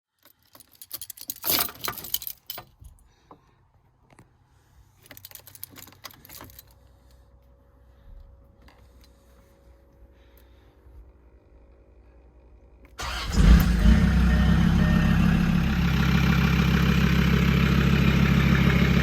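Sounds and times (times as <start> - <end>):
jingling rattling clicks: 0.2 - 3.0, 5.0 - 6.8.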